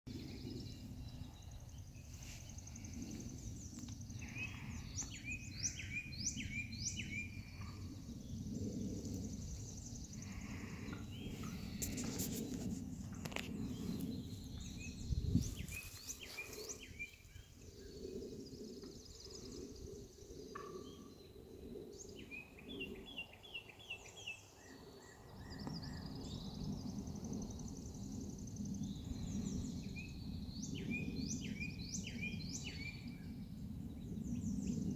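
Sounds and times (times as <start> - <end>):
low rumble: 0.1 - 20.6
songbirds chirping and trilling: 0.1 - 34.9.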